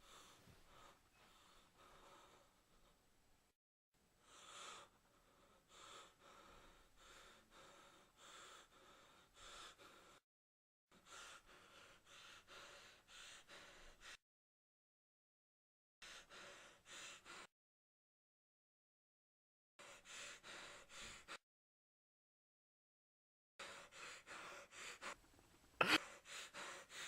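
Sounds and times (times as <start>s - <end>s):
person breathing quickly: 0.0s - 3.3s, 4.2s - 10.2s, 10.9s - 14.2s, 16.0s - 17.5s, 19.8s - 21.4s, 23.6s - 27.0s.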